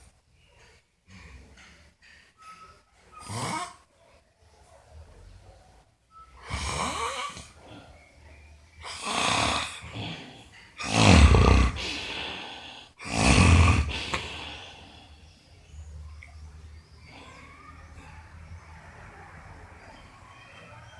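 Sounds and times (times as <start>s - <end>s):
loud snoring: 3.2s - 3.8s, 6.4s - 7.6s, 8.8s - 15.2s.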